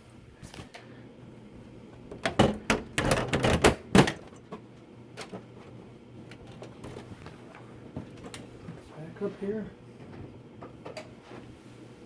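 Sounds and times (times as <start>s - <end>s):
hardware clicking and knocking: 2.1s - 4.6s.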